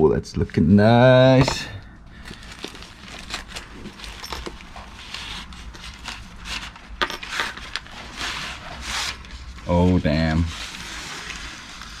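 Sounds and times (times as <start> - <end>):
packaging rustling: 1.4 - 9.6.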